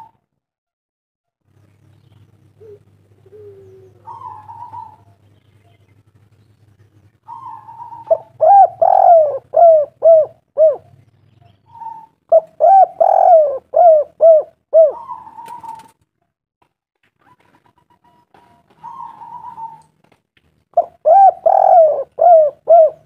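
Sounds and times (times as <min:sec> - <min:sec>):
dove cooing: 0:02.5 - 0:05.8, 0:07.2 - 0:16.0, 0:17.2 - 0:20.0, 0:20.8 - 0:23.0.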